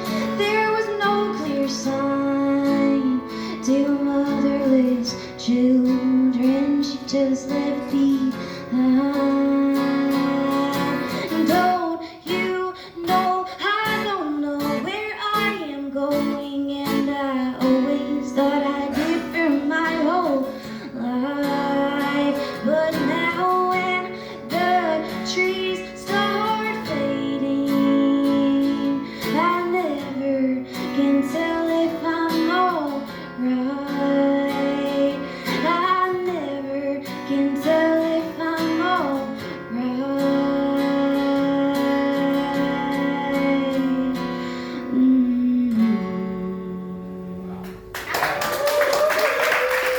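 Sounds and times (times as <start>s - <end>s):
person singing: 0.0s - 47.8s
guitar strumming: 13.3s - 47.9s.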